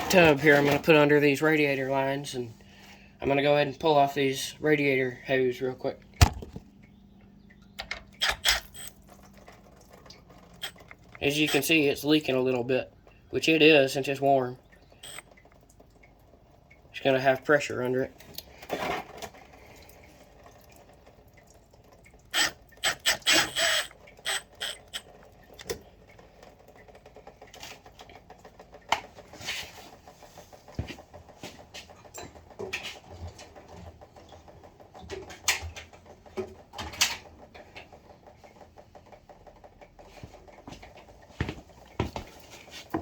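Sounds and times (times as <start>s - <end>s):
hand tools clicking and scraping: 7.8s - 9.0s, 10.5s - 11.8s, 15.0s - 15.2s, 22.3s - 25.8s
quick metallic clicks: 7.8s - 9.0s, 10.6s - 11.7s.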